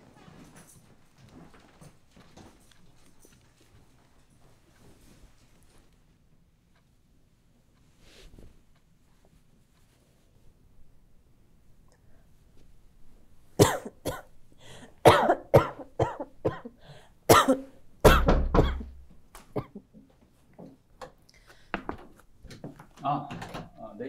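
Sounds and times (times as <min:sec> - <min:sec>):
person coughing harshly: 0:13.6 - 0:14.3, 0:15.0 - 0:19.0, 0:19.6 - 0:19.9.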